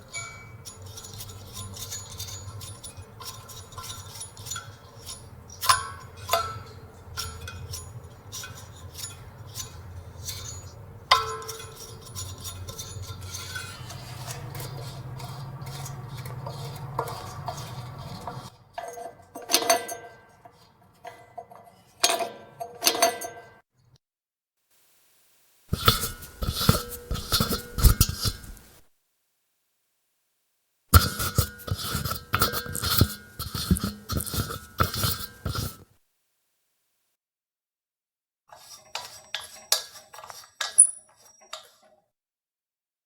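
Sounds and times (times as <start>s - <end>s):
metal clinks on gas cylinder valve: 0.0s - 9.2s, 10.4s - 13.6s, 25.7s - 28.6s, 31.0s - 35.8s.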